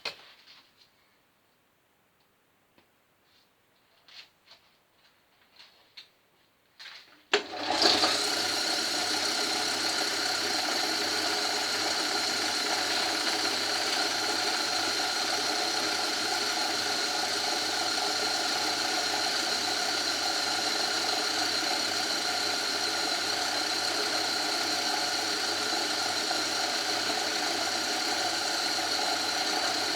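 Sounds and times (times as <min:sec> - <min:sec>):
lathe whining and humming: 0:07.4 - 0:29.9.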